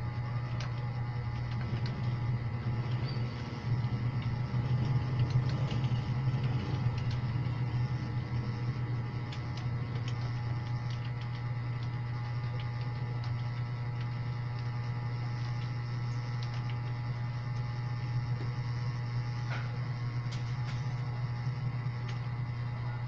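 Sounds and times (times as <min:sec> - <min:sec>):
low hum: 0:00.0 - 0:23.0
computer keyboard typing: 0:00.4 - 0:14.7, 0:15.3 - 0:17.7.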